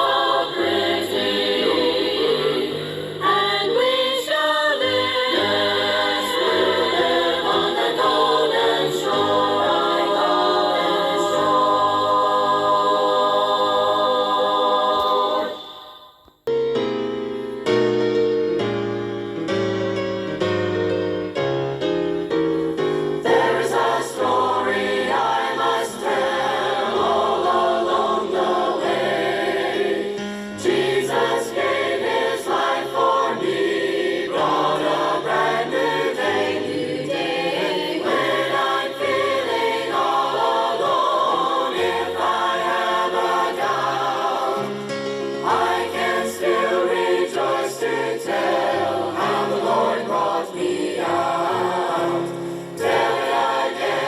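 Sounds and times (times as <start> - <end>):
choir singing gospel: 0.0 - 16.2, 23.1 - 54.0
piano accompaniment: 16.4 - 54.0.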